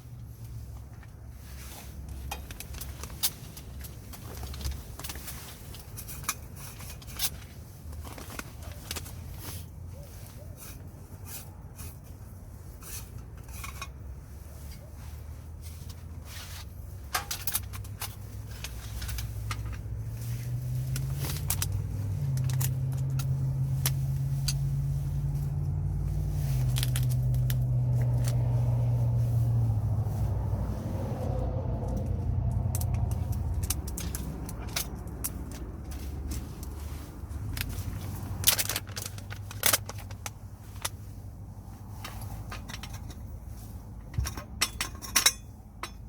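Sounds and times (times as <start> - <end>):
low engine-like hum: 0.0 - 46.0
objects being handled clicks: 31.8 - 36.7.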